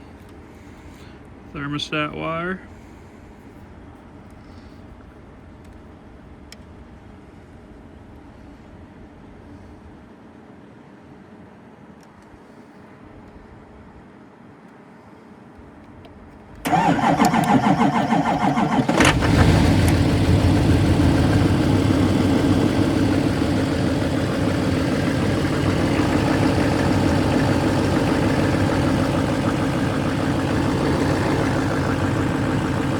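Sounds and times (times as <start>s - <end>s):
diesel engine idling: 16.7s - 32.9s
starter motor cranking: 16.7s - 32.9s.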